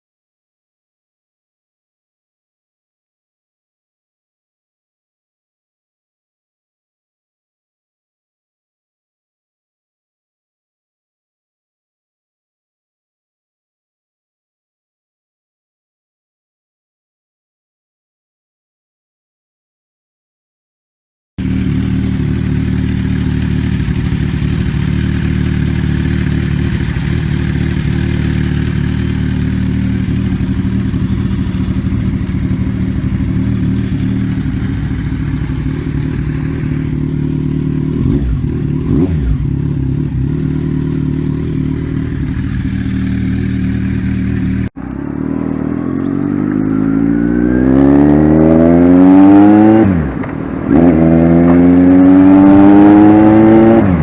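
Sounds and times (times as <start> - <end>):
motorcycle engine idling and revving: 21.4 - 54.0.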